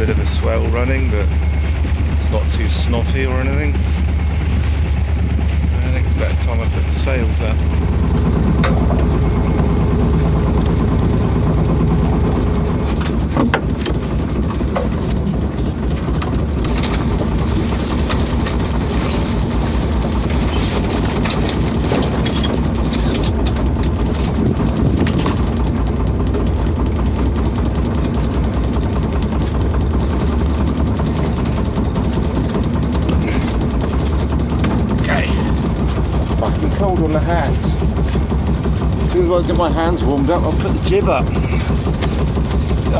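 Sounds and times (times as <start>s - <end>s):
boat engine droning: 0.0s - 42.9s
knocks and clatters on board: 12.8s - 39.2s, 40.2s - 42.9s.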